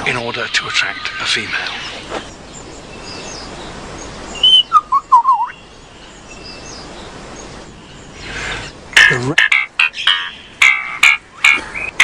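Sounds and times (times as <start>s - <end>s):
faint background hiss: 0.0s - 12.0s
bird whistled song: 0.7s - 8.7s.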